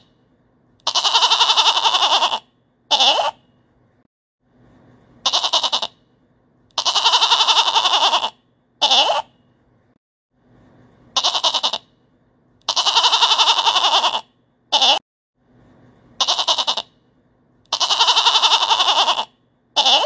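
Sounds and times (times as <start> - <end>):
goat bleating: 0.8 - 3.4, 5.2 - 5.9, 6.8 - 9.3, 11.2 - 11.8, 12.6 - 15.0, 16.2 - 16.9, 17.7 - 20.0.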